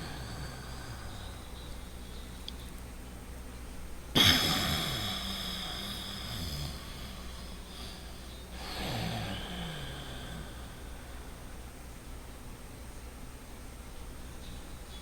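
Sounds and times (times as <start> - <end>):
man breathing loudly through nose: 0.0 - 2.4, 4.2 - 11.8.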